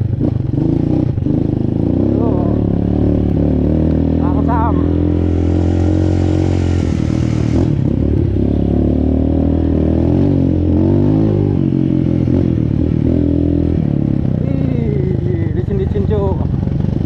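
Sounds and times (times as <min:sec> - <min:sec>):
motorcycle engine running: 0:00.0 - 0:17.0
hiss: 0:05.6 - 0:07.8.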